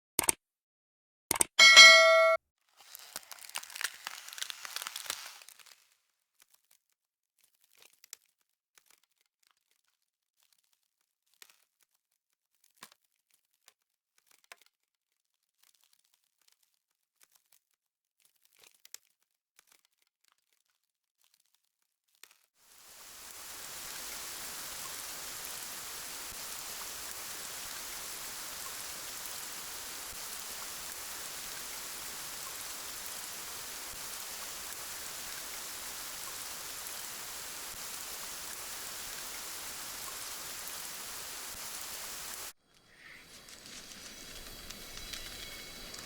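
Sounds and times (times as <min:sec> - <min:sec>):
faint high tones: 0:01.6 - 0:02.4
steady rain falling: 0:03.4 - 0:05.8, 0:22.7 - 0:46.0.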